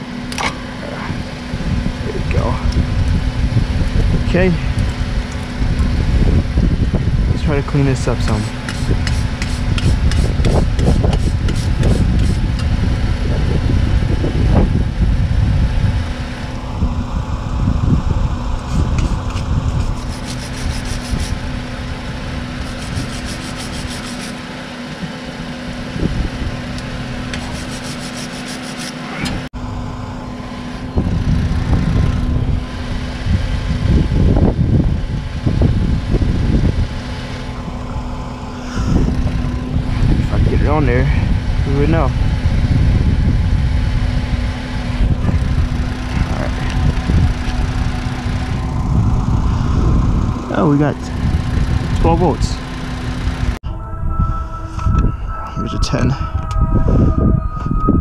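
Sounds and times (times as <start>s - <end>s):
steady hum: 0.0s - 58.0s
scraping corroded connector: 8.0s - 12.7s, 18.6s - 21.4s, 22.6s - 24.5s, 26.8s - 29.0s.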